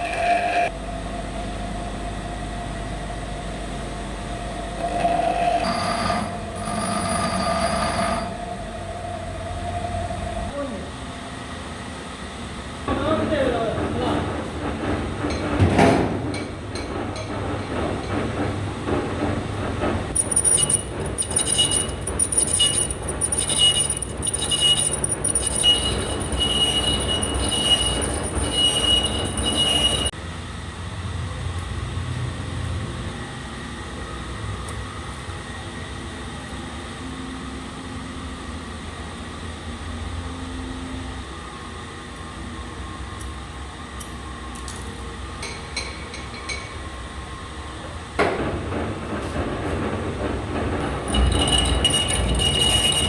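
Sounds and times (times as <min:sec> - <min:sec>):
metal-on-metal squeal: 0:04.8 - 0:08.4, 0:20.2 - 0:30.1, 0:50.8 - 0:53.0
lathe running: 0:20.1 - 0:30.1, 0:50.8 - 0:53.0.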